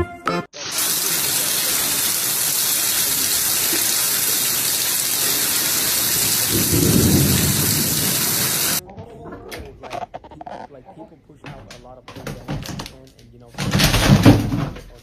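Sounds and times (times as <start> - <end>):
music: 0.0 - 0.6
water rushing: 0.6 - 8.8.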